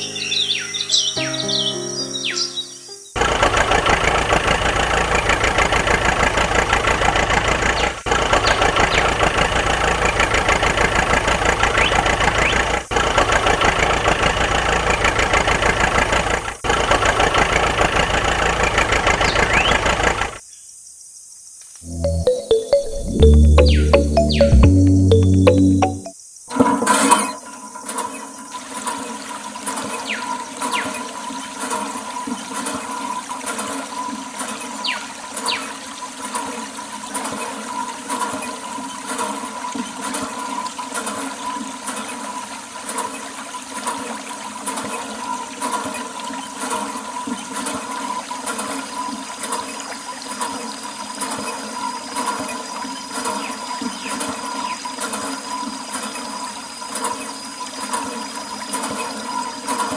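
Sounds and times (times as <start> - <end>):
water running in a stream: 3.2 - 20.4, 42.4 - 59.9.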